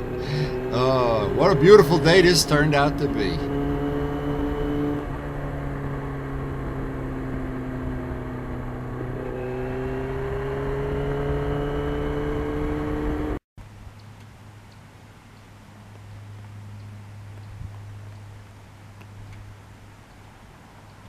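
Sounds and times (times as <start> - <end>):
motorcycle engine running: 0.0 - 13.4.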